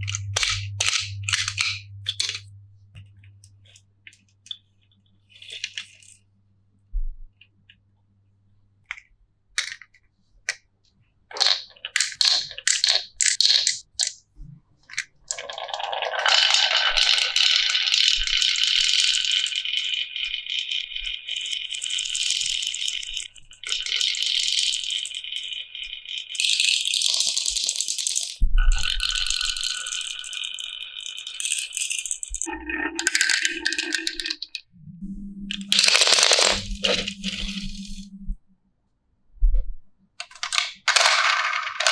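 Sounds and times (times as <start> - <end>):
marbles clicking on a marble run: 0.0 - 2.5, 9.6 - 10.0, 11.3 - 14.2, 14.9 - 34.6, 35.4 - 38.4, 40.2 - 41.9.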